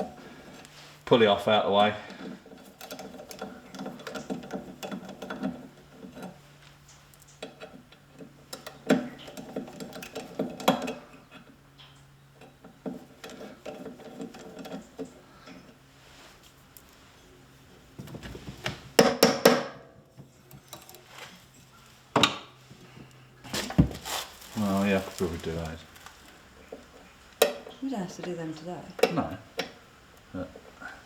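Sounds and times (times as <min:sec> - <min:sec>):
sharp metal knocks: 0:19.0 - 0:19.8.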